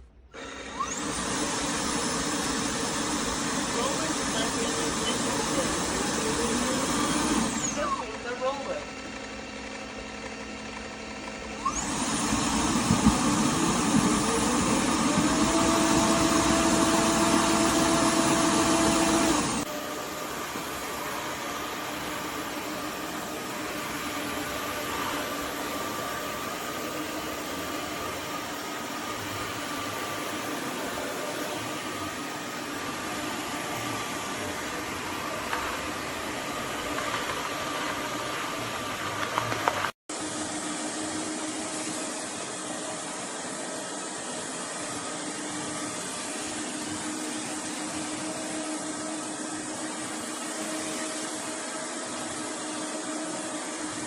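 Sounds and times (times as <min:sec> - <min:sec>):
floor washer motor whirring: 0:00.1 - 0:54.0.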